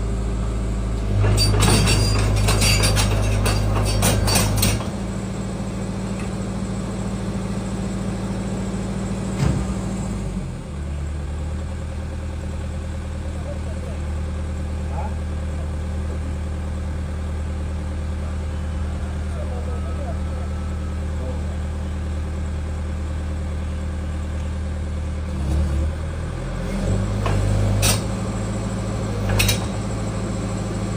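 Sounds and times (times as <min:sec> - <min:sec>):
excavator diesel engine running: 0:00.0 - 0:30.9
sharp metallic clanks: 0:01.1 - 0:05.0, 0:27.3 - 0:28.2, 0:29.2 - 0:29.8.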